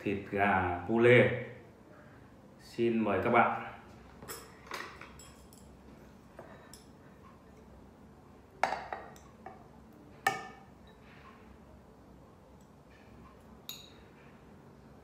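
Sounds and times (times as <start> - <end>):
tableware clinking: 4.2 - 5.8, 6.4 - 7.7, 8.6 - 11.1, 13.6 - 14.2.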